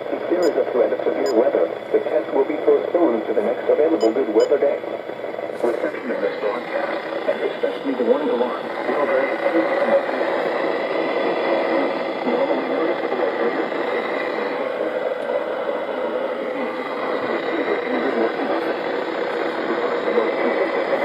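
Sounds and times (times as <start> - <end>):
faint garbled radio voice: 0.0 - 21.0
radio static hiss: 5.4 - 14.8, 16.4 - 21.0.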